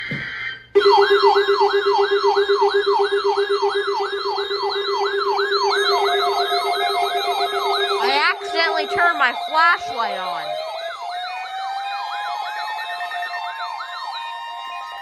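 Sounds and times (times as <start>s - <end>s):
wailing siren alarm: 0.0s - 15.0s.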